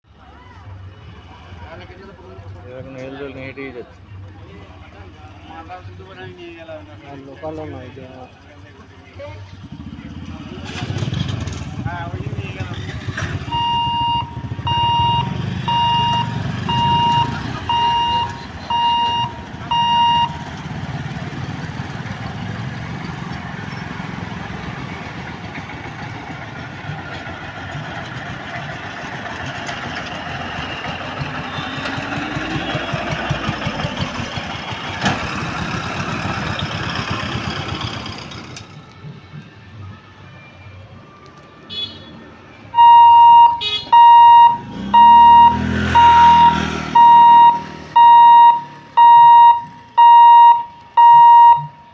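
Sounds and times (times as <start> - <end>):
level-crossing warning beeper: 13.4 - 21.5, 42.8 - 51.9
train wheels clattering on rail: 24.6 - 38.8.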